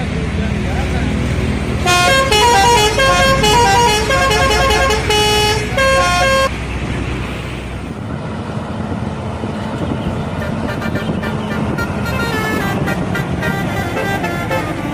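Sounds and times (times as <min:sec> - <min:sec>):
road noise: 0:00.0 - 0:14.9
vehicle engine: 0:00.0 - 0:14.9
musical bus horn tune: 0:01.8 - 0:06.5, 0:10.4 - 0:14.9.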